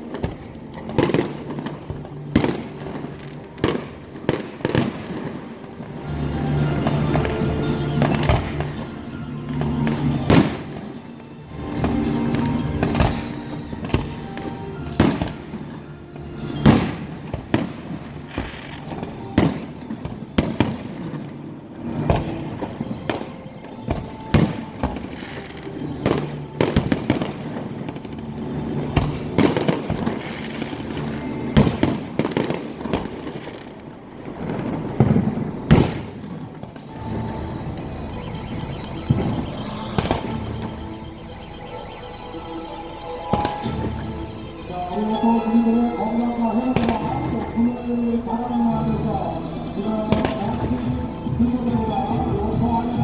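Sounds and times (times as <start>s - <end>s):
fireworks bangs: 0.0s - 53.0s
music playing: 0.0s - 53.0s.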